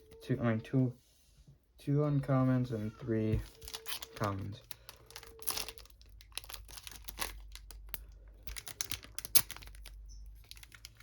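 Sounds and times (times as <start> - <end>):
foil wrapper crinkling: 3.4 - 11.0.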